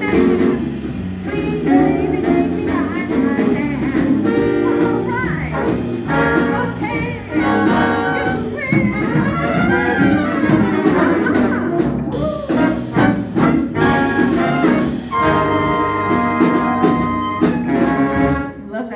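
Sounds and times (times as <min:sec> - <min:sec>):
swing band playing: 0:00.0 - 0:18.9
trumpets and trombones: 0:04.1 - 0:18.9.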